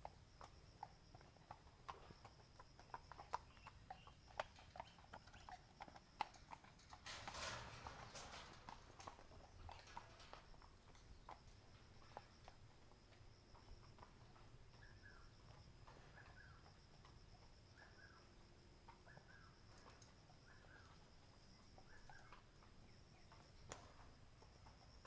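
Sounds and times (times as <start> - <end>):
insect chirring: 0.0 - 25.0
bird chirping: 3.3 - 5.6, 9.2 - 16.9, 17.6 - 18.4, 19.0 - 19.6, 20.3 - 21.0, 21.6 - 23.7.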